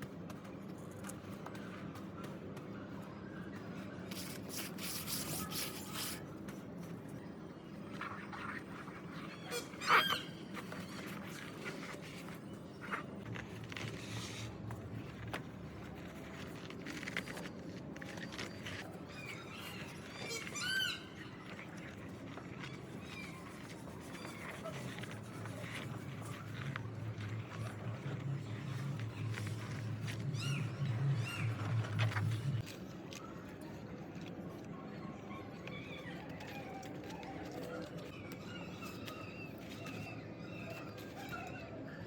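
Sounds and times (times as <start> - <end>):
steady background noise: 0.0 - 42.0
high animal calls: 9.2 - 10.9.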